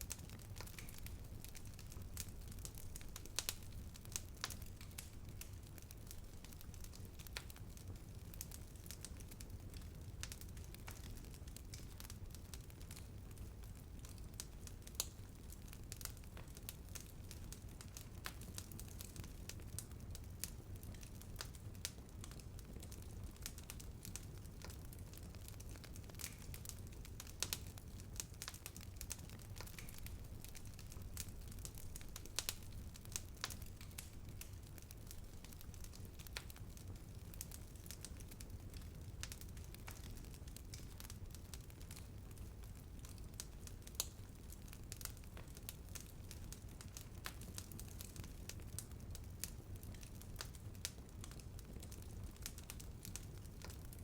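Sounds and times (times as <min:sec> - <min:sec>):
wood fire crackling: 0:00.0 - 0:54.0
sharp fire pops: 0:24.6 - 0:41.2.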